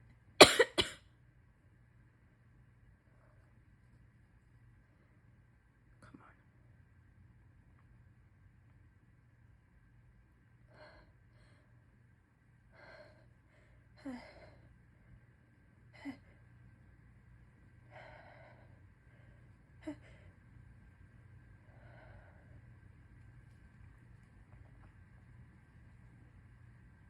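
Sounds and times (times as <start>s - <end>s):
person's stifled sneezes: 0.4s - 1.0s.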